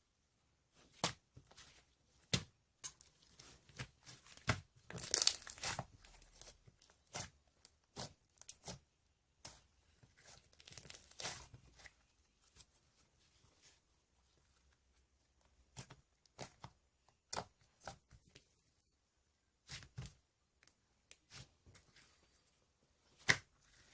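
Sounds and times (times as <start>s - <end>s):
slime squishing and crackling: 3.2s - 12.0s.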